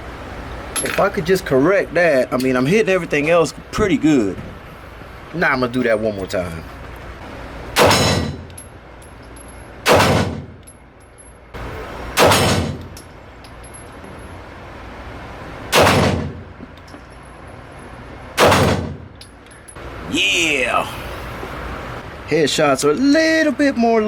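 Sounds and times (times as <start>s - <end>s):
pistol shots echoing indoors: 9.9s - 10.4s, 12.2s - 12.8s, 15.7s - 16.4s, 18.4s - 19.0s.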